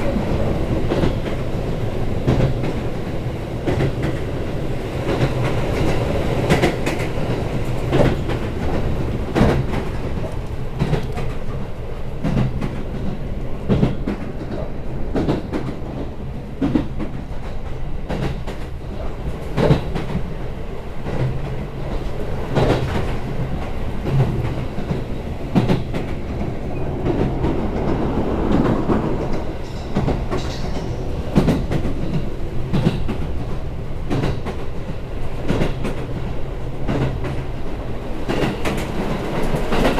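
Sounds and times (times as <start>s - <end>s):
train rumble: 0.0s - 39.9s
wheels clacking over rail joints: 21.0s - 37.6s.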